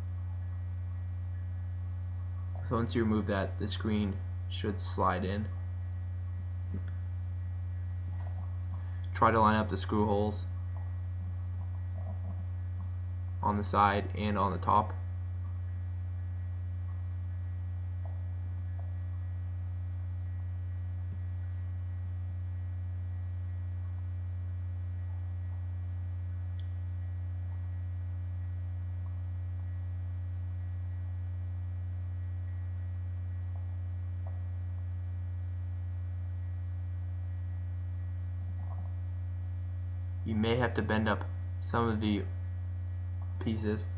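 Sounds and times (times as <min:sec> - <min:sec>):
mains hum: 0:00.0 - 0:43.9
faint small clicks: 0:26.5 - 0:26.8.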